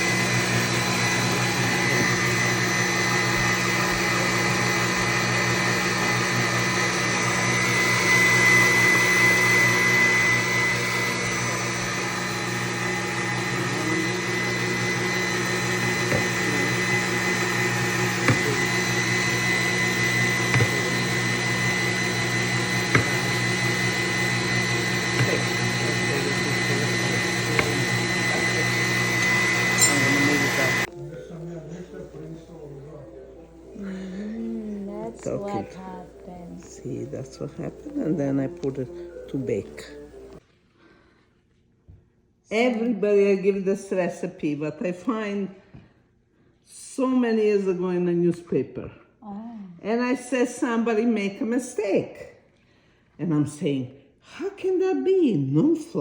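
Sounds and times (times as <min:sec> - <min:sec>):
electric mixer motor running: 0:00.0 - 0:40.4.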